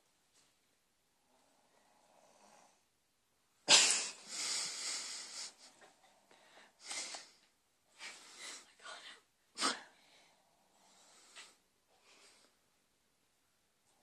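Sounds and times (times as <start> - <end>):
loud noisy breath: 3.8 - 5.6.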